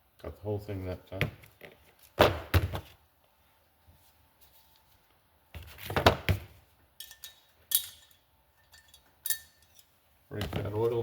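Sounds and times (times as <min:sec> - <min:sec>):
metal tools clattering and knocking: 0:07.0 - 0:10.0.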